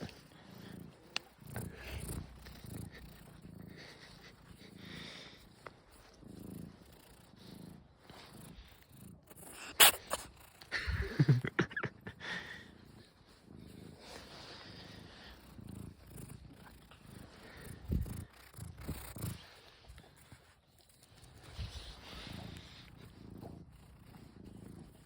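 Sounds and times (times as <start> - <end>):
cat purring: 0.0 - 25.0
cat sneezing: 9.5 - 10.3.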